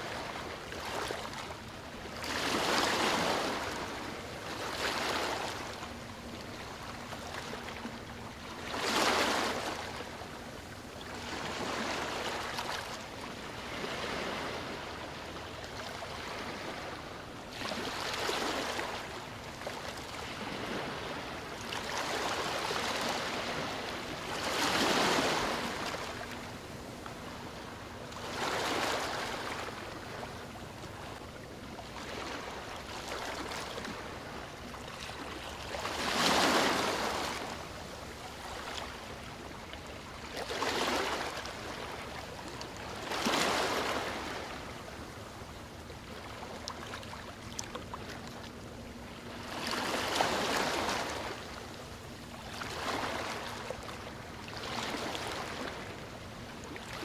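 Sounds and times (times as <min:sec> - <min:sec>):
sea waves washing ashore: 0:11.1 - 0:45.4.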